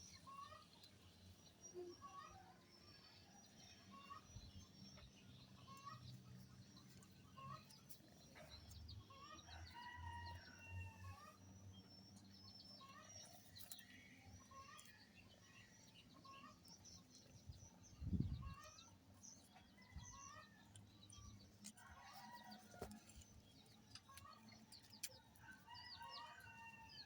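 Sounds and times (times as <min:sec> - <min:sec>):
faint bird calls and chirps: 0:00.0 - 0:27.0.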